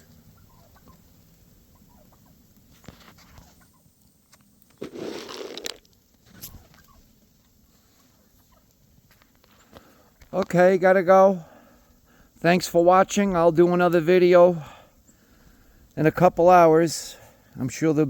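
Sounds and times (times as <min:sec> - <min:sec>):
turkeys clucking: 0:00.3 - 0:03.9, 0:06.5 - 0:10.3.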